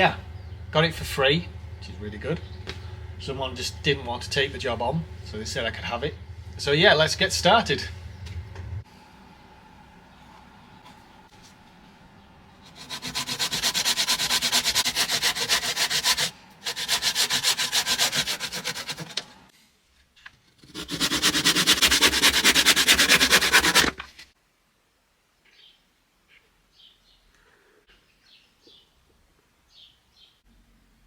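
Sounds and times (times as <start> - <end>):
sanding wood: 12.6 - 19.4, 20.6 - 24.1.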